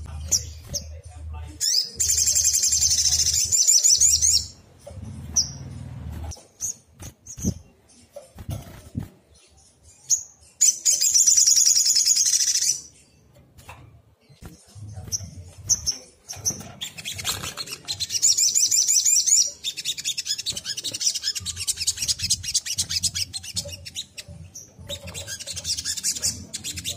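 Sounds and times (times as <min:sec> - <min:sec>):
bird singing high fast trills: 0:01.6 - 0:07.6.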